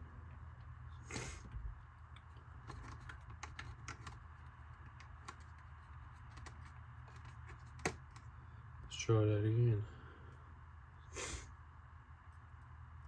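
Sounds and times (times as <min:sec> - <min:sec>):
low steady hum: 0:00.0 - 0:13.0
clicks and taps of plastic parts: 0:02.2 - 0:04.2, 0:04.8 - 0:08.3.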